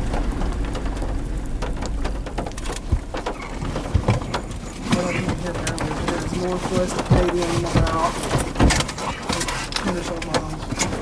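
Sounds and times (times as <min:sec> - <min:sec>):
heavy knocks: 0:00.0 - 0:11.0
rain striking a vehicle: 0:00.0 - 0:11.0
wind and road noise: 0:00.0 - 0:11.0.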